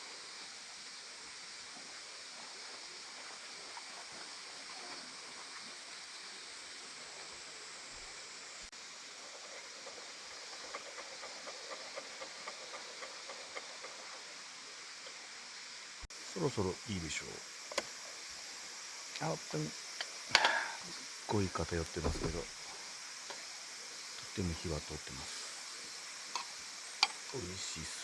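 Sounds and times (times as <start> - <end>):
rice sizzling: 0.0 - 28.0
faint irregular crackles: 19.1 - 23.4.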